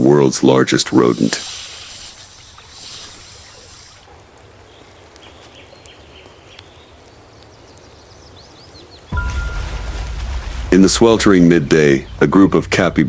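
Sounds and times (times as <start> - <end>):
low hiss and rumble: 9.1 - 13.0.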